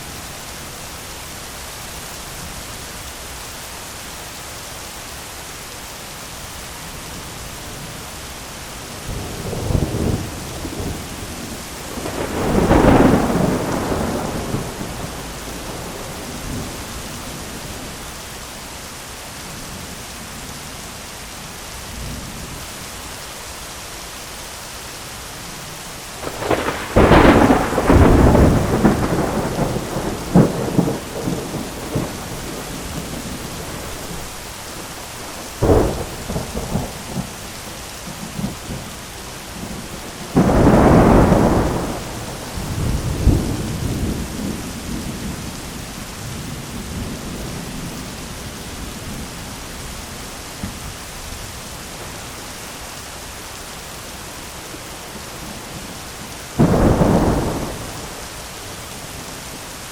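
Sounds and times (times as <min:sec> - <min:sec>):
heavy rain on umbrella: 0:00.0 - 0:59.9
thunder: 0:09.1 - 0:16.9, 0:26.2 - 0:34.2, 0:39.6 - 0:48.0, 0:56.6 - 0:58.3.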